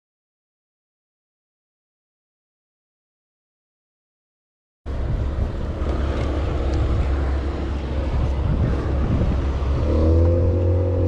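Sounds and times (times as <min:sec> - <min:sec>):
outboard motor running: 0:04.9 - 0:11.0
wind buffeting microphone: 0:04.9 - 0:11.0.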